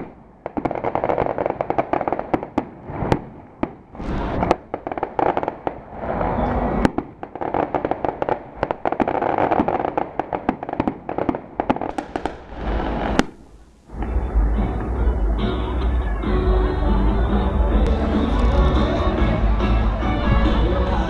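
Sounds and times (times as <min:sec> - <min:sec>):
firecracker bangs and crackling: 0:00.0 - 0:14.9
continuous rumble: 0:03.8 - 0:07.4, 0:11.9 - 0:21.0
music with steady bass: 0:13.9 - 0:21.0.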